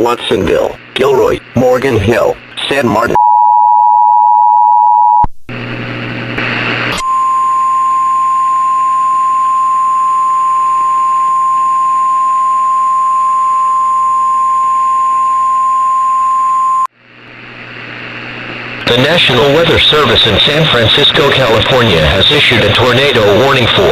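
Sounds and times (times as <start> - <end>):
static hiss with low hum: 0.0 - 3.2, 5.3 - 7.0, 17.0 - 23.9
steady warning tone: 6.9 - 16.9, 18.8 - 23.9.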